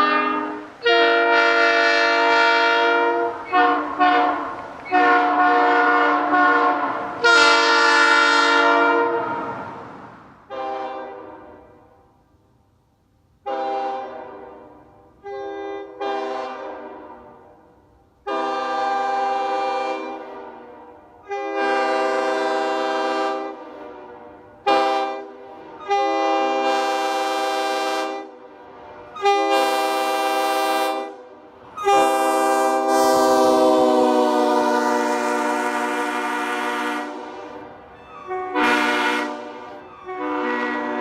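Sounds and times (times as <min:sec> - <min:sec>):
train horn blasts: 0:00.0 - 0:09.8, 0:10.4 - 0:12.1, 0:13.4 - 0:41.0.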